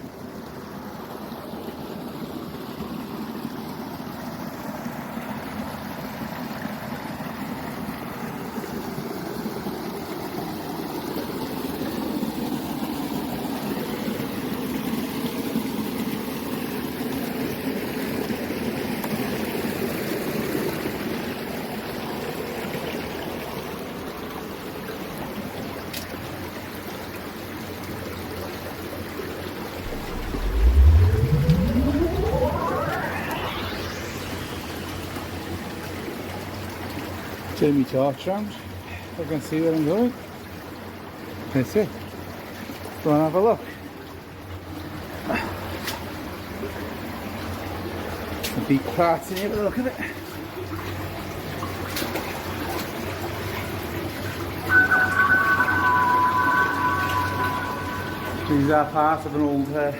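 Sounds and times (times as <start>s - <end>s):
underground waterfall rushing: 29.8s - 36.2s.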